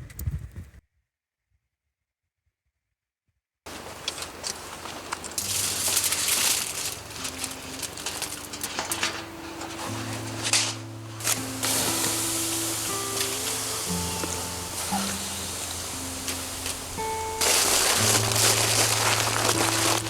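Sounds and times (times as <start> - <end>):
hiss with crackles: 3.7 - 20.0
music with slow low notes: 4.2 - 20.0.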